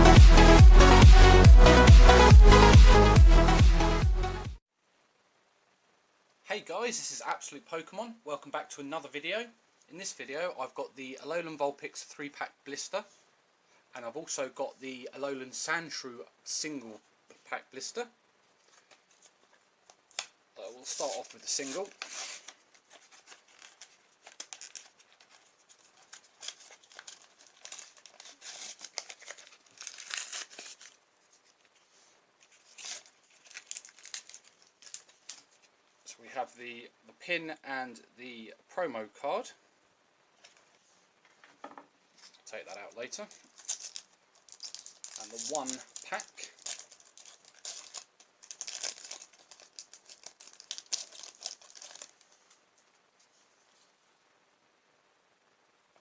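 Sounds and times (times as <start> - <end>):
blister pack tearing and crinkling: 20.9 - 31.0, 32.4 - 35.6, 43.1 - 52.4.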